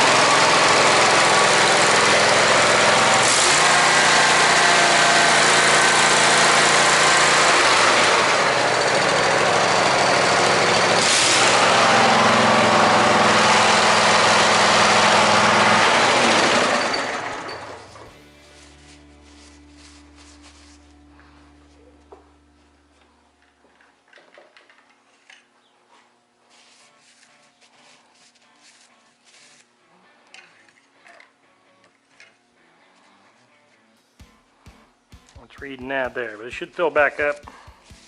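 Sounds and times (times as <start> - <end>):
mower engine running: 0.0 - 20.0, 34.2 - 38.0.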